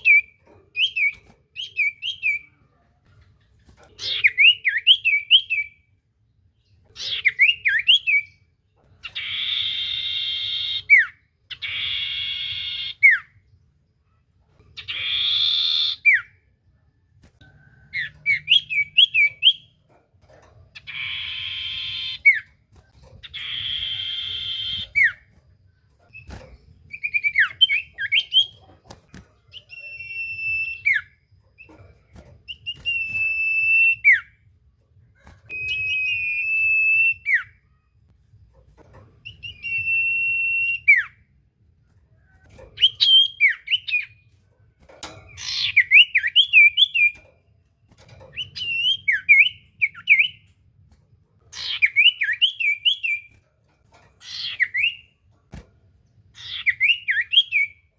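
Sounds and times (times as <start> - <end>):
bird high whistle: 29.6 - 31.1, 35.6 - 37.6, 39.3 - 41.2.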